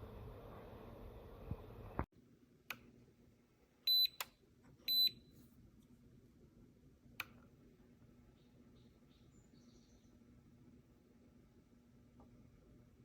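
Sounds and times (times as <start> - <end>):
high electronic kettle beeps: 3.9 - 4.2, 4.9 - 5.2.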